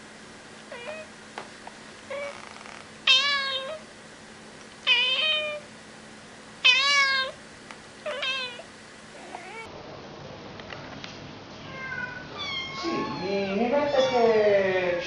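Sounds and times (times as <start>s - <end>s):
cat meowing: 0.7s - 1.1s, 2.1s - 3.8s, 4.9s - 5.7s, 6.6s - 7.4s, 8.0s - 9.7s, 11.6s - 14.3s.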